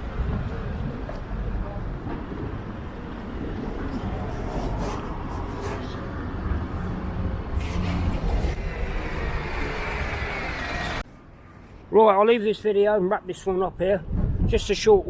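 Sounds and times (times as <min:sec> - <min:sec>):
wind on microphone: 0:00.0 - 0:10.5, 0:14.0 - 0:15.0
cars passing: 0:00.0 - 0:11.1.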